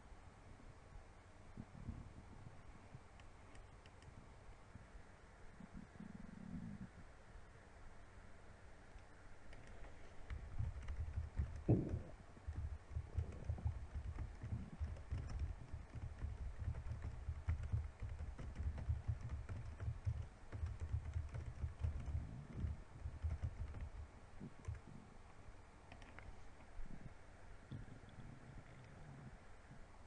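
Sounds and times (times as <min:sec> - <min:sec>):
stomach growling: 0:11.6 - 0:12.2, 0:27.7 - 0:29.4.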